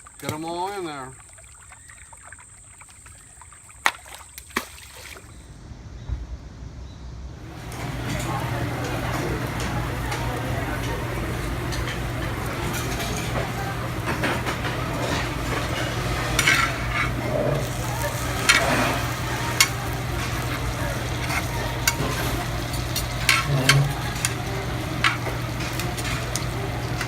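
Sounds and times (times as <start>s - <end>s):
steady hum: 5.5s - 27.0s
meat sizzling on a grill: 7.5s - 27.0s.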